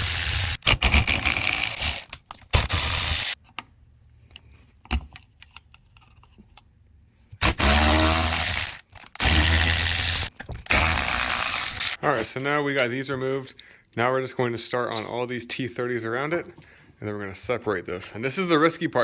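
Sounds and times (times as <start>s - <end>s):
cordless power driver running: 0.0s - 3.4s, 7.4s - 12.0s.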